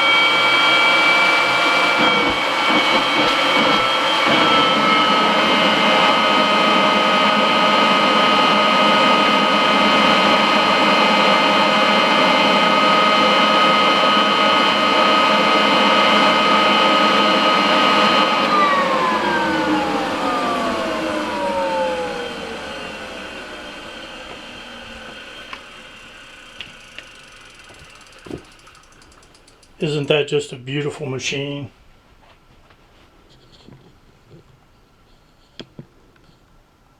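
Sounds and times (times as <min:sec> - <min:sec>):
vacuum cleaner motor whining: 0:00.0 - 0:29.9.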